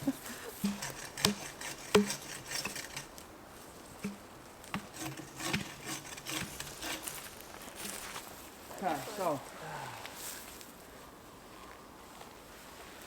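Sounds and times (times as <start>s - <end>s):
axe chopping wood: 0.6s - 2.3s, 4.0s - 7.0s.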